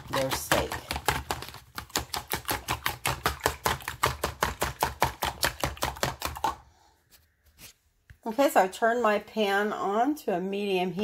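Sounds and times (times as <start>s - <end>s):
fork beating eggs in a bowl: 0.0s - 6.6s.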